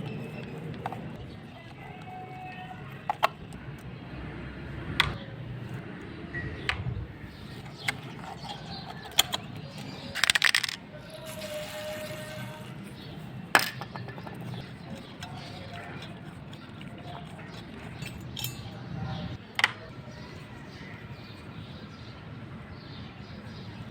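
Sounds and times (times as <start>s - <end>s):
small metal parts clicking: 7.6s - 18.8s.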